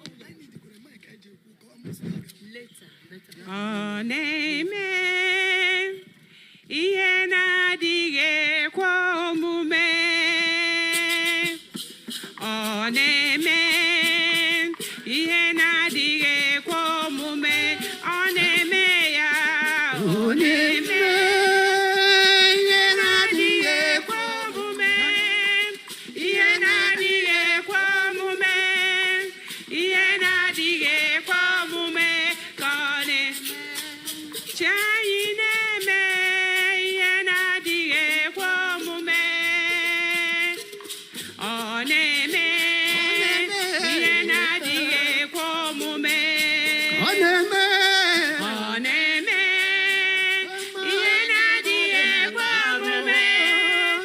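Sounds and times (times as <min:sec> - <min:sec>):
solo voice singing: 0:12.4 - 0:40.8, 0:41.4 - 0:54.0.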